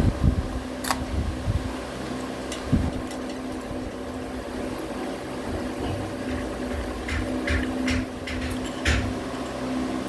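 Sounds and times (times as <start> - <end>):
motor humming: 0.0 - 10.0.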